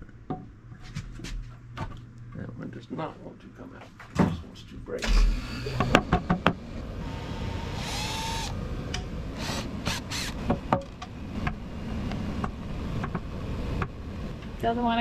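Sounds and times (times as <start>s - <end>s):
drill-driver whirring: 5.1s - 5.9s, 7.0s - 8.6s, 9.4s - 10.4s.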